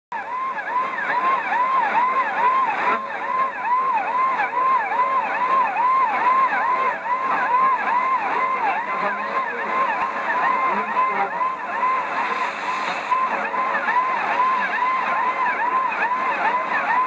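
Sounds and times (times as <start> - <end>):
warbling alarm-like radio tone: 0.2 - 17.0
radio hiss: 0.7 - 3.6, 6.8 - 17.0.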